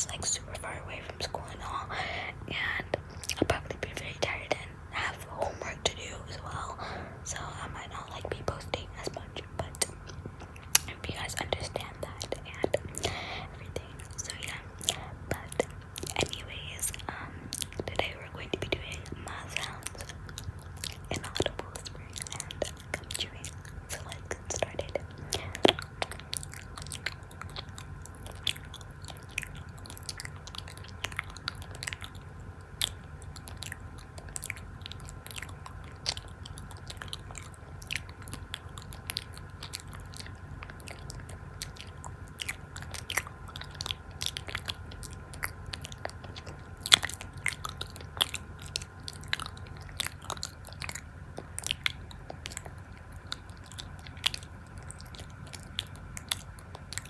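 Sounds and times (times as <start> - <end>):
steady low hum: 0.0 - 57.0
crunchy chewing and biting: 19.0 - 57.0.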